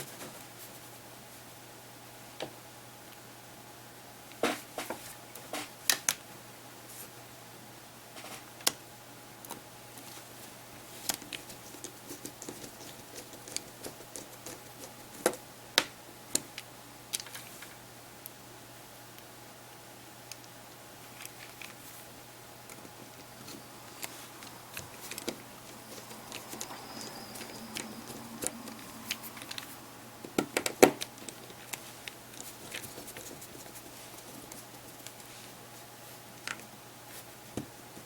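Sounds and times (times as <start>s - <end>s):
faint low hum: 0.0s - 38.0s
small parts and tools clicking: 22.7s - 35.3s.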